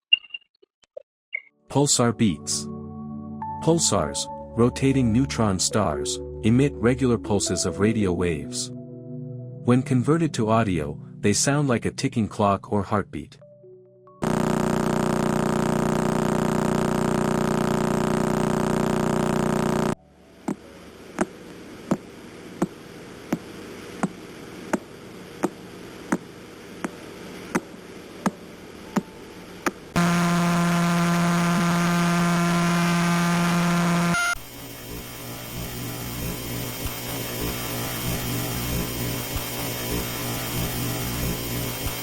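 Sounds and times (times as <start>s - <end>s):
steady buzzing hum: 14.2s - 20.0s, 29.9s - 42.0s.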